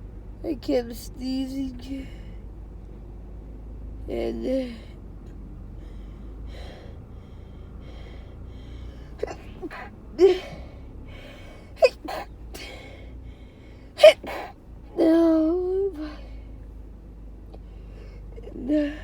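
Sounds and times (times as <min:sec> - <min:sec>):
sharp gasping breaths: 0:05.7 - 0:14.6
woman sneezing: 0:09.2 - 0:10.6, 0:11.8 - 0:12.7, 0:14.0 - 0:14.6.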